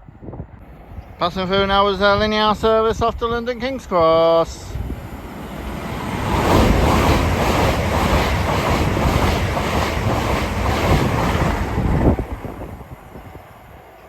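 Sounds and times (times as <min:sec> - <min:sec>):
train passing at speed: 0:00.0 - 0:14.0.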